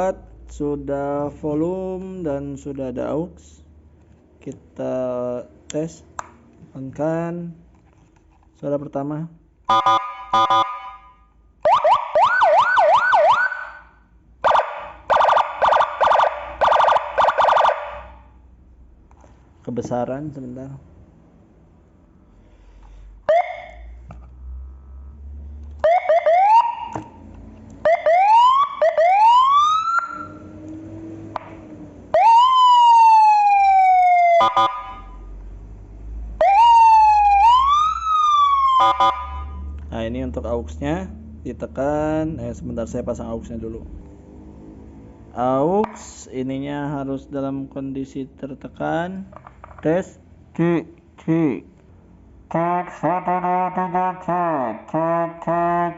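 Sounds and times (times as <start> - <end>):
electronic siren wailing and blasting: 9.7 - 18.2, 23.3 - 23.9, 25.8 - 27.2, 27.8 - 30.5, 32.1 - 35.3, 36.4 - 39.7.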